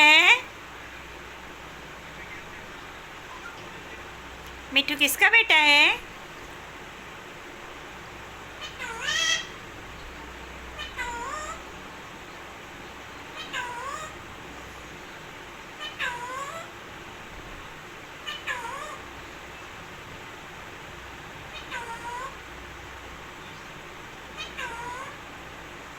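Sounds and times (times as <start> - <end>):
parrot calls: 0.0 - 0.5, 8.5 - 12.0, 12.9 - 15.0, 15.7 - 16.8, 18.2 - 19.8, 21.4 - 22.5, 24.3 - 25.4.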